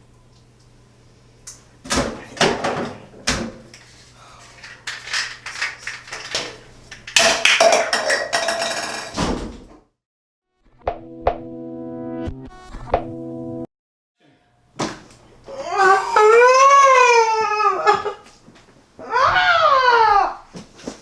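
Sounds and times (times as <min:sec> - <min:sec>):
household objects knocking and clattering: 0:04.6 - 0:09.6.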